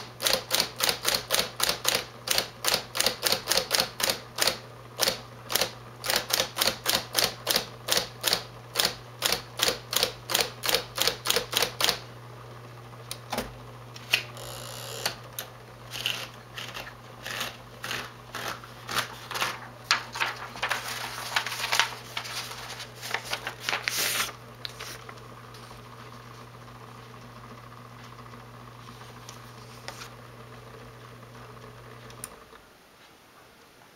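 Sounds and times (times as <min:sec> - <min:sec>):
typewriter motor humming: 0:00.0 - 0:12.1, 0:14.0 - 0:25.2.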